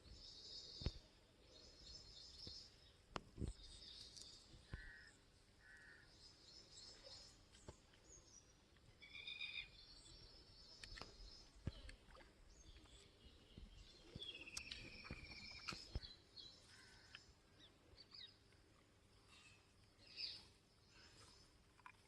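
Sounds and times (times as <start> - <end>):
birds chirping and trilling: 8.0 - 18.4.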